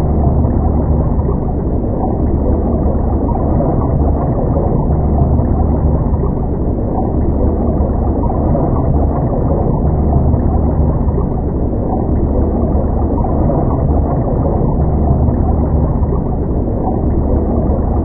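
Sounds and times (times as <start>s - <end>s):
muffled underwater rumble: 0.0s - 18.0s.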